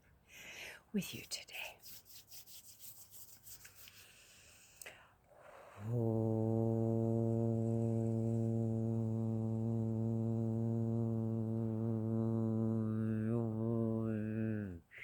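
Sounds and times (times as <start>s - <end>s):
person inhaling: 0.3s - 0.8s, 3.9s - 6.0s
person singing a long low note: 5.7s - 15.0s.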